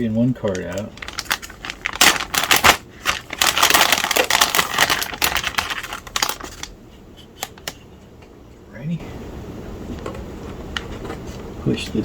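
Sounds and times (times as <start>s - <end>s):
packaging rustling and crinkling: 0.0s - 6.8s.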